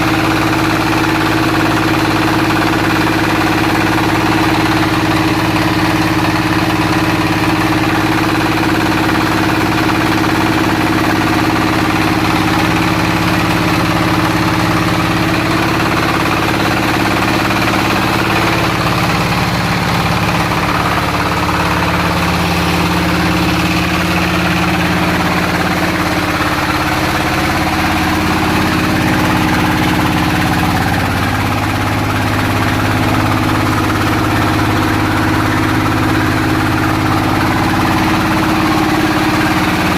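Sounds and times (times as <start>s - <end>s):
extruder machine droning: 8.6s - 39.9s.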